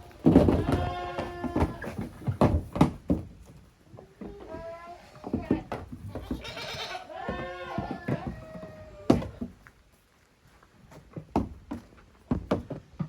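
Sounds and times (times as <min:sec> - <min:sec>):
goat kid bleating: 0:00.4 - 0:02.0, 0:04.0 - 0:09.4.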